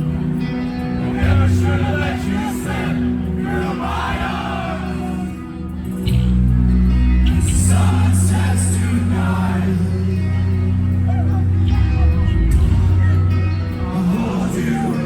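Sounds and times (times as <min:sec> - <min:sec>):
live metal band playing: 0:00.0 - 0:15.0
low bass notes: 0:00.0 - 0:15.0
people singing: 0:01.0 - 0:05.5, 0:07.3 - 0:10.8, 0:12.6 - 0:15.0.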